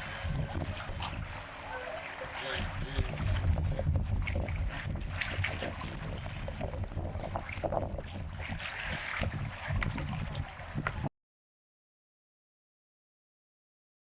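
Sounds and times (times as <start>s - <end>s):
low fluctuating rumble: 0.0s - 11.1s
small knocks and splashes: 4.2s - 6.1s, 8.4s - 11.1s.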